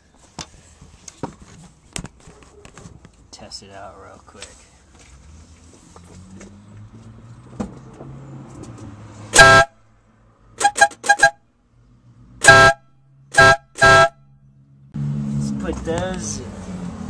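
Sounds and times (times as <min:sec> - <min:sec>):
loud car air horn: 0:09.3 - 0:09.8, 0:10.6 - 0:11.4, 0:12.4 - 0:14.3.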